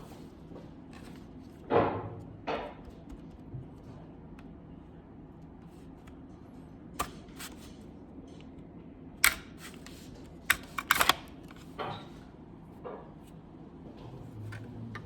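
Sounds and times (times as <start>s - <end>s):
clicks of computer parts handled: 9.2s - 12.0s.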